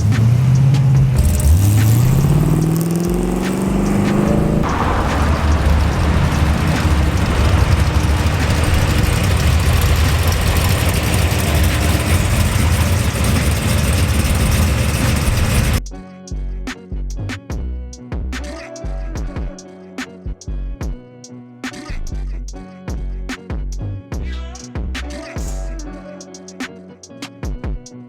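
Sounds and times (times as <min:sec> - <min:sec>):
car engine accelerating: 0:00.0 - 0:15.8
road and wind noise: 0:00.0 - 0:15.8.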